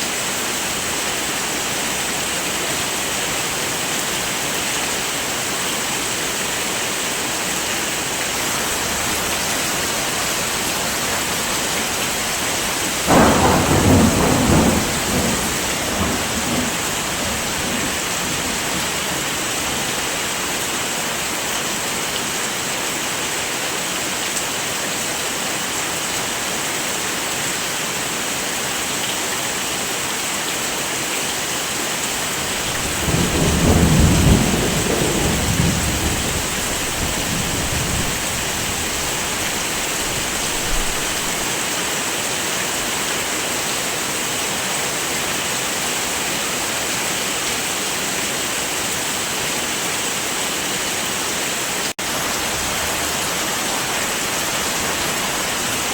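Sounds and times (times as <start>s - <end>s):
heavy rain falling: 0.0s - 55.9s
thunder rumbling: 8.4s - 19.9s, 32.4s - 41.4s.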